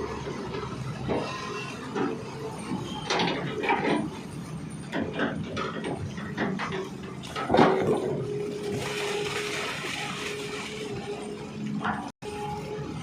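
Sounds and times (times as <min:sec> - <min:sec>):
soil and stones scraping: 0:06.8 - 0:12.1.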